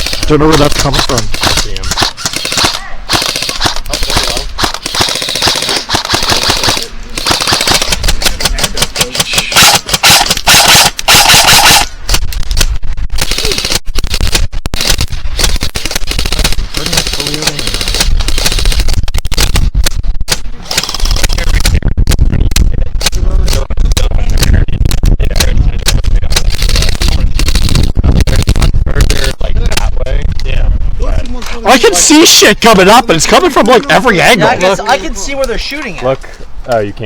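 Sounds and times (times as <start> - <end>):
airsoft guns firing full auto: 0.0 - 11.9, 13.2 - 19.5, 20.6 - 21.4.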